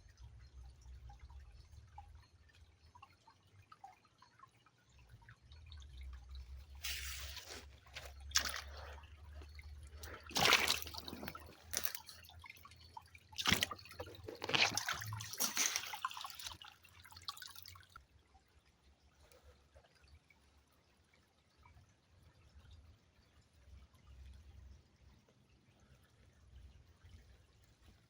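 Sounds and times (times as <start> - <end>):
river water splashing: 6.8 - 12.4, 13.3 - 17.5.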